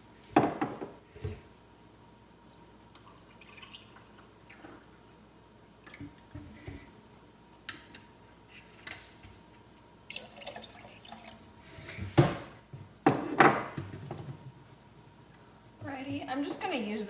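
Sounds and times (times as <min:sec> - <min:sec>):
milk being poured: 0:02.5 - 0:04.9, 0:10.0 - 0:11.5.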